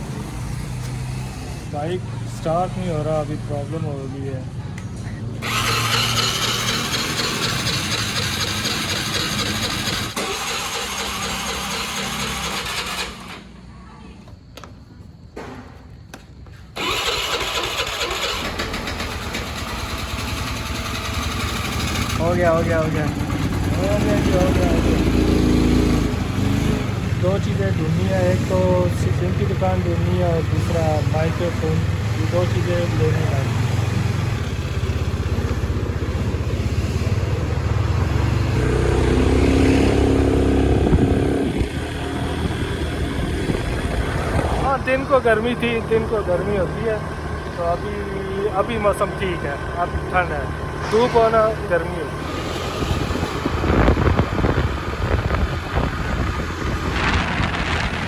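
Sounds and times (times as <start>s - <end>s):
sharp starter clicks: 5.4s - 13.5s, 16.8s - 22.3s
motorbike engine running: 5.4s - 13.7s, 16.8s - 58.0s.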